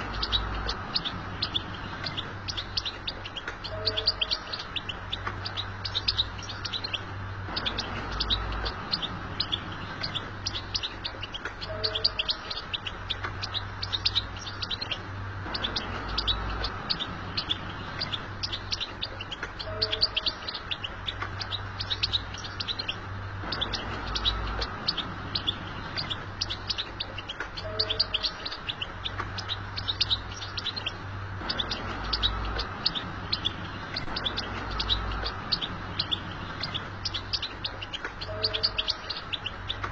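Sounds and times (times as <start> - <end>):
bird twittering song: 0.0 - 39.9.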